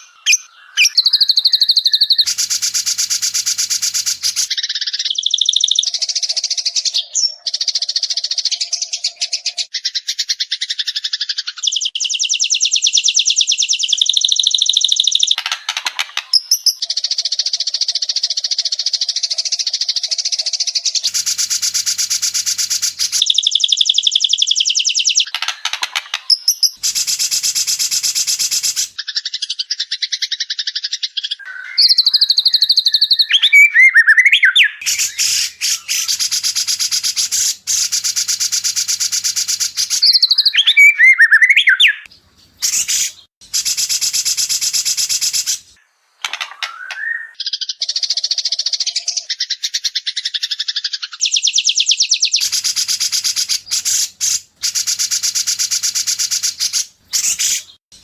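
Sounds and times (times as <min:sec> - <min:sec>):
bird whistled phrases: 0:00.0 - 0:09.7, 0:11.6 - 0:15.4, 0:31.4 - 0:45.6, 0:46.6 - 0:57.8.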